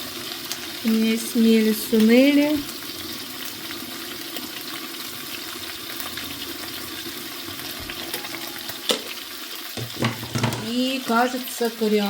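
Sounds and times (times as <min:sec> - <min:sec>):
meat sizzling in a frying pan: 0:00.0 - 0:12.0.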